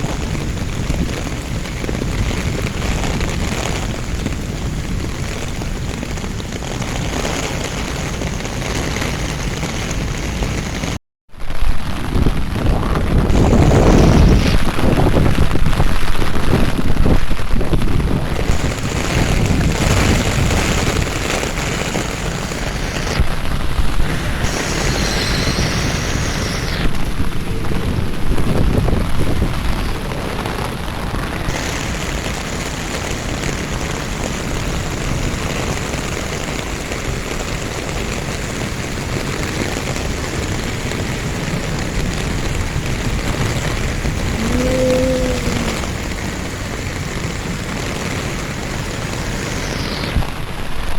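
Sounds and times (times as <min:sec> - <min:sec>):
steady rain falling: 0:00.0 - 0:50.9
deep low rumble: 0:43.9 - 0:46.5.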